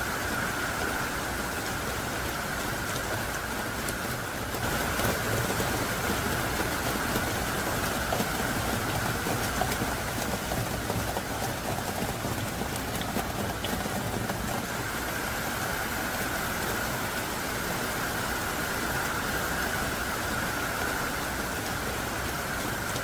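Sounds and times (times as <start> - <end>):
heavy rain hissing: 0.0 - 23.0
raindrop ticks: 0.8 - 14.8.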